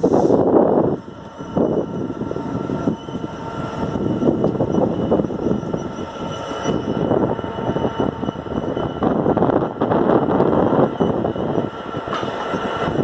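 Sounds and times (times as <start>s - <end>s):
diesel locomotive rumble: 0.0s - 13.0s
high whine: 0.0s - 13.0s.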